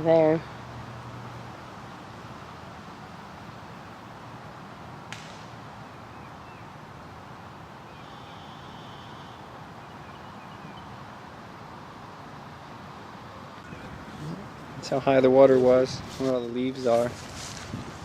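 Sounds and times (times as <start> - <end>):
outdoor background noise: 0.0 - 18.0
sharp click: 5.1 - 5.5
faint bird chirps: 7.9 - 11.0.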